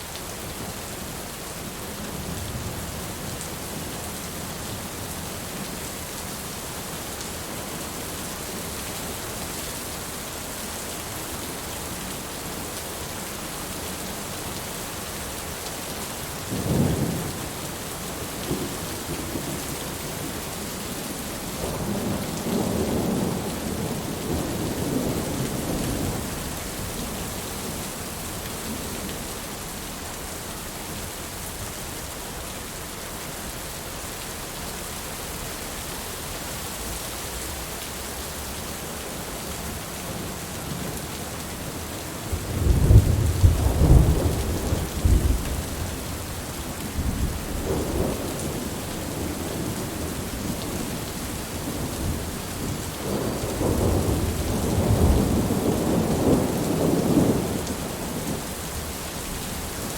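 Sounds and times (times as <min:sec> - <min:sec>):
heavy rain falling: 0:00.0 - 0:59.9
thunder rumbling: 0:42.3 - 0:50.9, 0:51.6 - 0:58.4.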